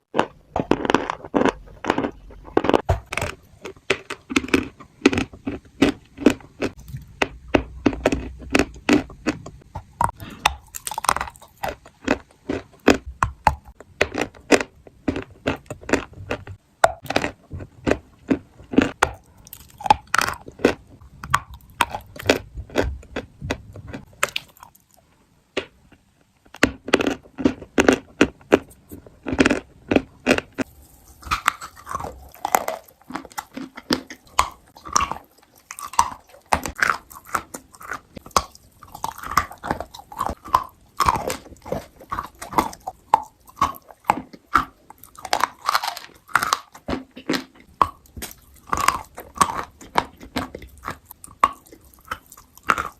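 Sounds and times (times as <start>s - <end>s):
crunchy chewing of food: 0.0s - 52.9s.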